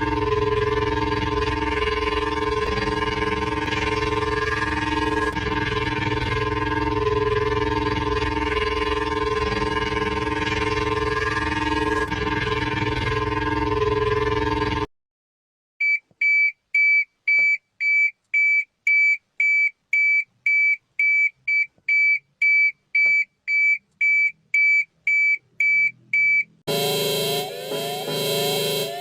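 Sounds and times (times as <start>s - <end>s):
alarm with rising tones: 0.0s - 14.8s, 26.7s - 29.0s
high electronic beep: 26.7s - 29.0s.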